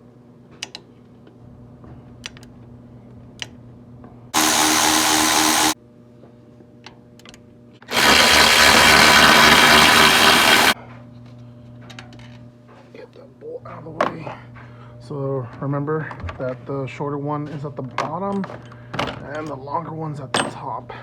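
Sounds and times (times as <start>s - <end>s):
power driver running: 4.4s - 5.8s, 7.9s - 10.8s.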